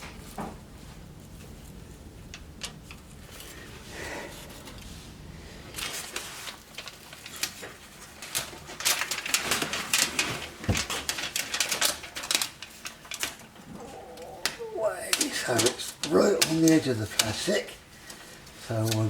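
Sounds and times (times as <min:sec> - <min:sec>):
plastic strip crackling and clicking: 0:10.8 - 0:19.0.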